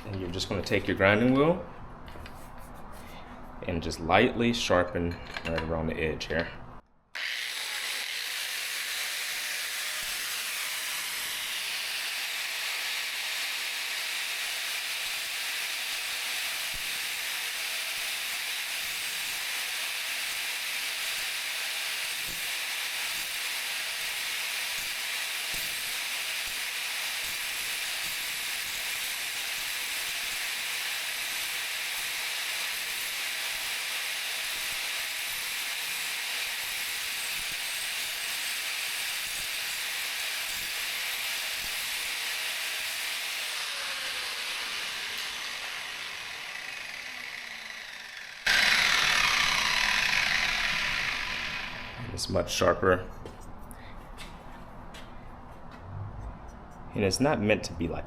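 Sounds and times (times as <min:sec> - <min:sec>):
grinding wheel on metal blade: 0:07.2 - 0:52.1.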